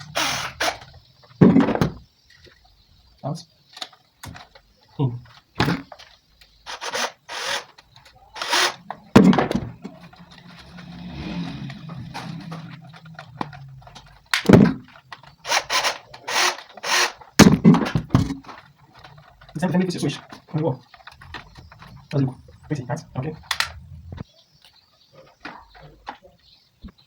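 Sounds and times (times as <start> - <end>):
low hum: 8.3 - 15.2, 21.0 - 24.2.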